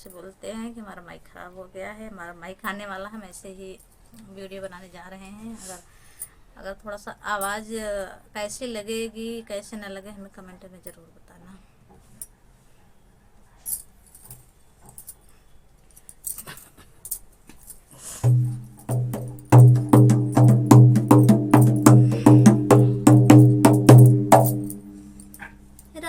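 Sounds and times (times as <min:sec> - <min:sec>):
low folk drum beat: 0:18.2 - 0:25.6.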